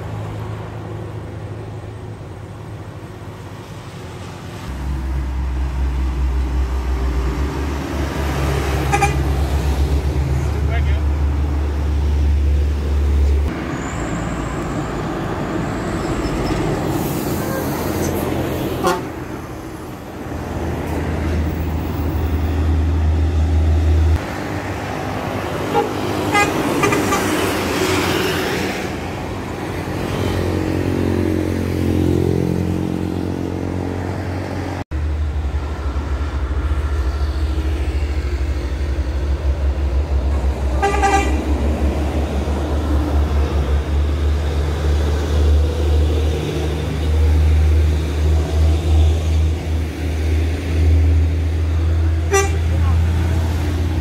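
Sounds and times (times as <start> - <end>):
road traffic and bus engines rumbling: 0.0 - 54.0
multi-tone musical bus horn: 8.8 - 9.3, 17.3 - 18.0, 18.8 - 19.2, 25.7 - 27.4, 40.7 - 41.5, 52.2 - 53.1.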